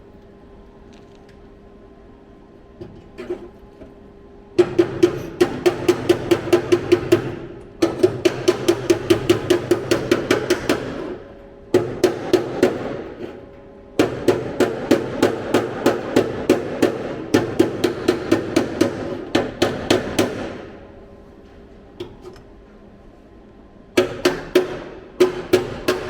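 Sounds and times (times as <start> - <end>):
hammer tapping on sheet steel: 4.6 - 13.4, 14.0 - 20.8, 24.0 - 26.0.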